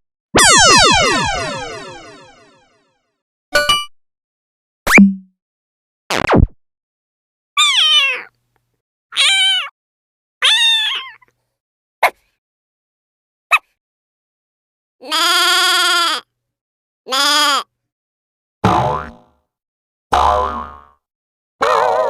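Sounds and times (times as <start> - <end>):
cat meowing: 7.6 - 8.3, 9.2 - 9.7.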